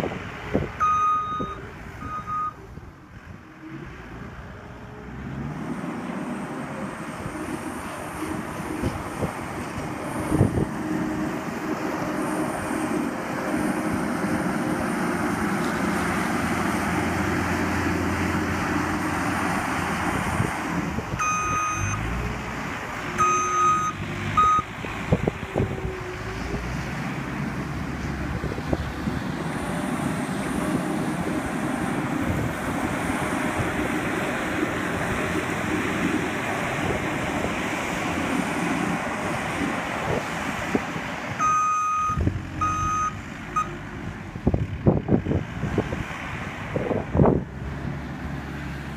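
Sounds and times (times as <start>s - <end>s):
loader engine running under load: 0.0s - 48.9s
backup alarm beeping: 0.8s - 2.6s, 23.2s - 24.7s, 41.4s - 43.8s.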